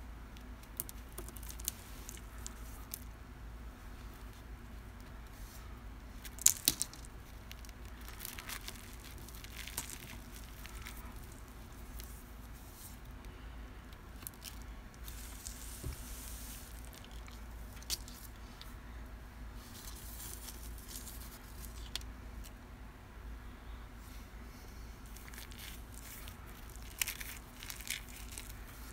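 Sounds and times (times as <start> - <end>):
cornstarch crunching and crumbling: 0.6 - 3.1, 6.2 - 13.0, 25.1 - 28.9.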